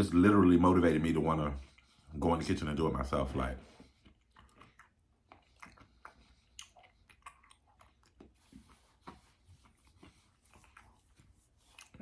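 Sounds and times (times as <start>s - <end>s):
close-up chewing: 3.3s - 12.0s
soft mouth clicks and smacks: 3.7s - 12.0s.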